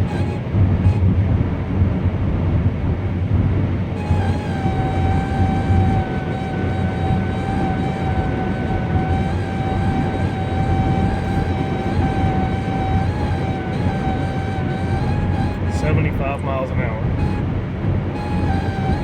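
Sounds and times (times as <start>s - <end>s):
high-pitched whine in car: 3.8s - 16.4s, 17.0s - 19.0s.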